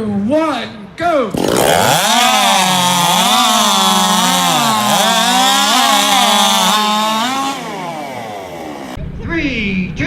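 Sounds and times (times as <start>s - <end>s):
chainsaw cutting log: 1.3s - 9.0s.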